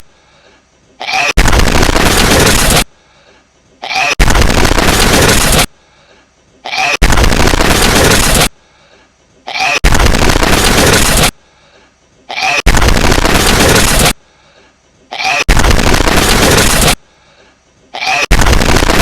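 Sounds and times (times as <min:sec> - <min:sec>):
loud distorted blast: 0:01.4 - 0:02.9, 0:04.2 - 0:05.7, 0:07.0 - 0:08.5, 0:09.8 - 0:11.3, 0:12.6 - 0:14.2, 0:15.5 - 0:17.0, 0:18.2 - 0:19.0.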